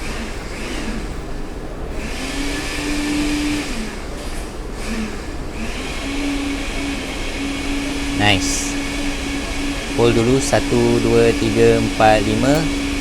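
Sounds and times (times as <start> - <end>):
hot air blower hissing: 0.0 - 13.0
low hum: 6.8 - 13.0.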